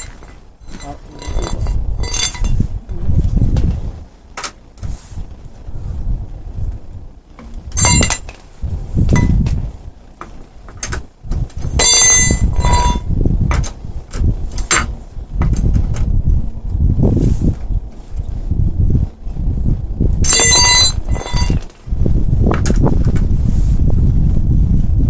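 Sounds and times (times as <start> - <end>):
metal tools clinking and clanking: 0.0 - 2.6, 7.4 - 8.4, 9.1 - 9.4, 11.6 - 13.8, 14.5 - 15.6, 20.2 - 21.8
ringing metallic clanks: 0.0 - 2.6, 7.4 - 8.4, 9.1 - 9.5, 11.6 - 13.8, 14.6 - 15.0, 20.2 - 21.7.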